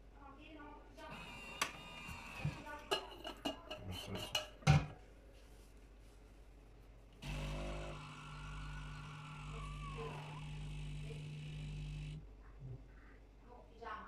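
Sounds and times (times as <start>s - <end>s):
coffee machine humming: 1.1s - 2.9s, 7.2s - 12.3s.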